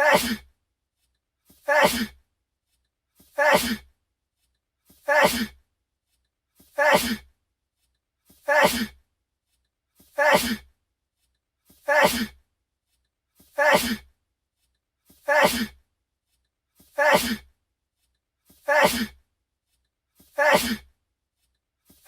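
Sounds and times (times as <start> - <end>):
man sneezing: 0.0 - 0.4, 1.6 - 2.2, 3.4 - 3.8, 5.0 - 5.6, 6.8 - 7.2, 8.5 - 9.0, 10.2 - 10.6, 11.9 - 12.4, 13.6 - 14.0, 15.3 - 15.8, 17.0 - 17.4, 18.7 - 19.2, 20.4 - 20.9.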